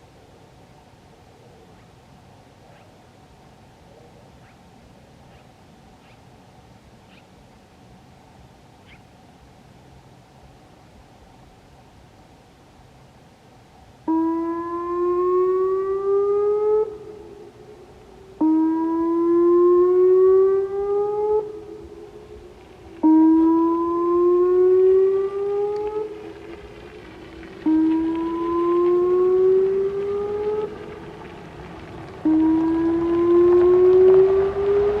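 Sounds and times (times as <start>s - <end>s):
rising warning siren tone: 14.1s - 35.0s.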